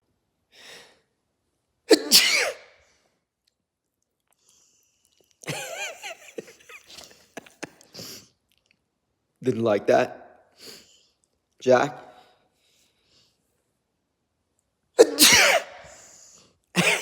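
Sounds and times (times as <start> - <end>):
person sneezing: 1.9 - 2.7, 15.0 - 16.2.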